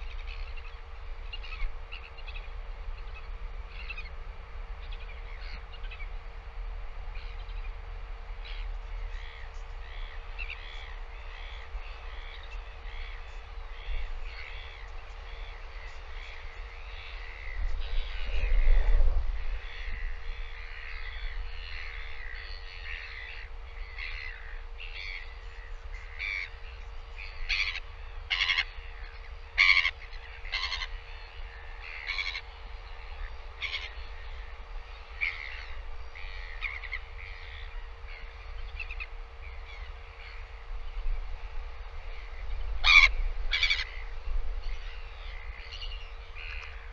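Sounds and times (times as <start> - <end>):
birds chirping and calling: 0.0 - 4.2, 8.4 - 41.1, 42.1 - 46.9
low rumble: 15.4 - 22.6.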